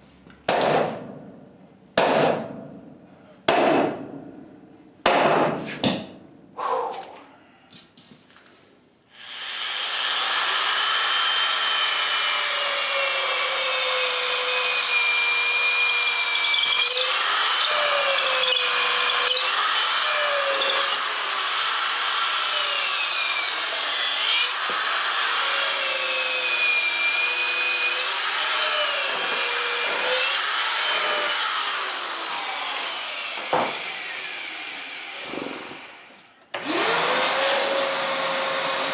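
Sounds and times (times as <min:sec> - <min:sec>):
sharp knocks: 0:00.5 - 0:01.3, 0:02.0 - 0:02.8, 0:03.5 - 0:04.4, 0:05.0 - 0:06.2
power tool motor whining: 0:09.2 - 0:38.9.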